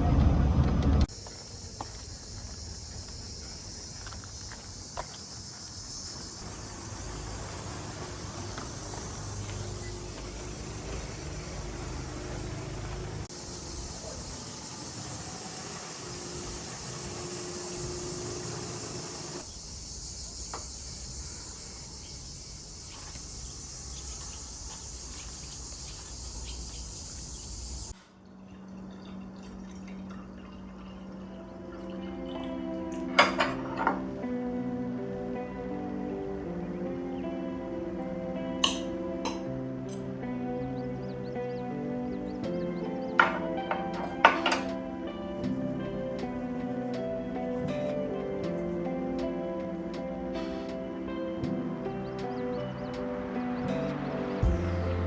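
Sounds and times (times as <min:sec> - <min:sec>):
insects buzzing: 0:01.0 - 0:55.0
high-pitched insect chorus: 0:01.1 - 0:28.0.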